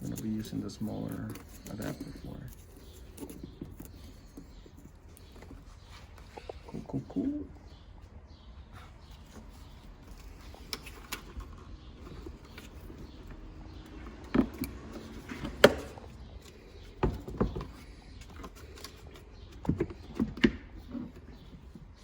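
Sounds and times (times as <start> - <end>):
plastic parts clicking and knocking: 10.1 - 21.9.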